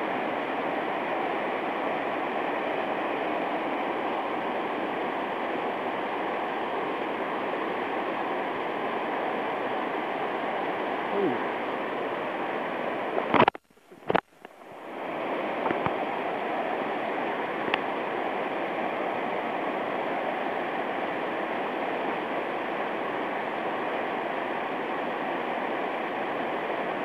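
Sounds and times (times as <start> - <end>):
mountain stream rushing: 0.0 - 27.0.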